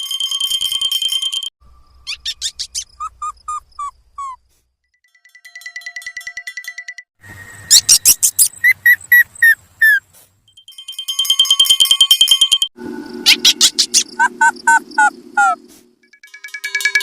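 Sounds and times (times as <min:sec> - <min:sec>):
pulsing electronic beep: 0:12.8 - 0:15.6
low buzz: 0:12.8 - 0:16.1
pulsing high alarm tone: 0:12.8 - 0:16.1
squeaky electronic chirps: 0:13.0 - 0:15.6.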